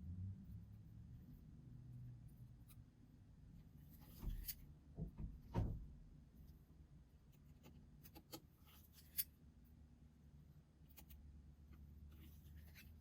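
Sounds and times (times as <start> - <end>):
low steady hum: 0.0 - 13.0
small tools clicking and scraping: 7.6 - 9.4.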